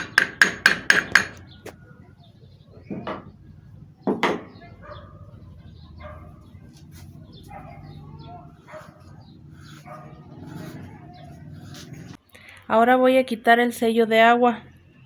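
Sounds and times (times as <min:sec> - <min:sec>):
faint bird and animal calls: 0:04.5 - 0:12.2.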